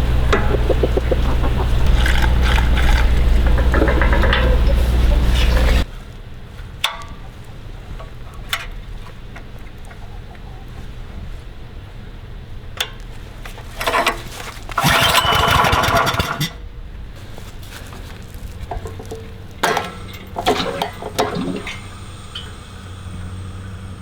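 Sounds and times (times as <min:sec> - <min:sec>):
clattering bursts: 0:00.0 - 0:05.8, 0:14.7 - 0:16.6
log splitter engine running: 0:00.0 - 0:05.9, 0:14.7 - 0:16.6, 0:17.8 - 0:24.0.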